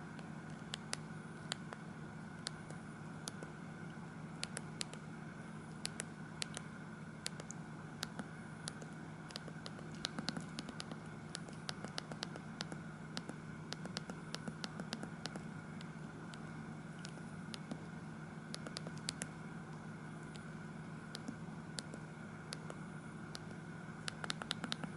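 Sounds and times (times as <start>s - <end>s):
low hum and hiss: 0.0s - 24.9s.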